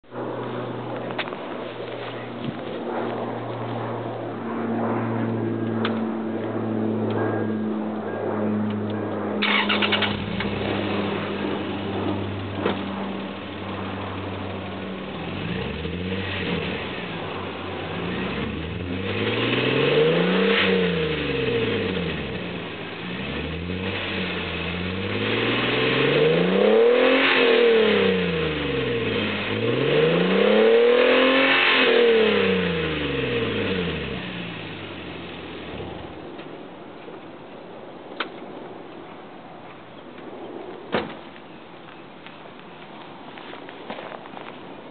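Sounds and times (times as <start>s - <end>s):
car engine idling: 9.4s - 19.1s, 21.0s - 25.2s
car engine revving: 9.4s - 36.2s.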